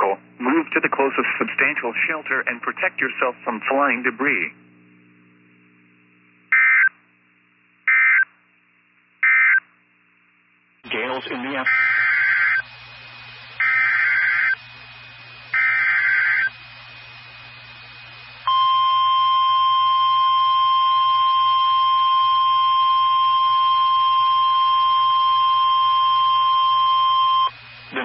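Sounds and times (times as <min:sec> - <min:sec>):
warbling data bursts: 0:10.9 - 0:17.0
steady warning alarm tone: 0:11.6 - 0:16.9, 0:18.4 - 0:27.8.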